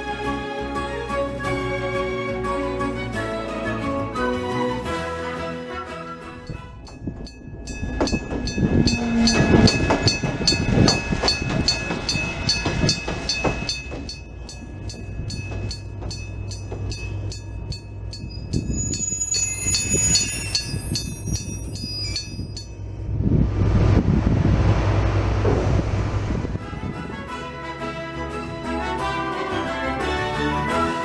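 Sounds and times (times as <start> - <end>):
train rumbling: 3.0 - 27.6
level crossing warning bell: 6.4 - 23.1.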